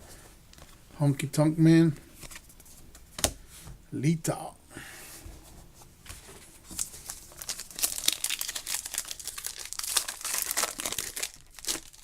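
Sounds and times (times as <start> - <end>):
card pack wrapper crinkling and tearing: 6.7 - 12.0.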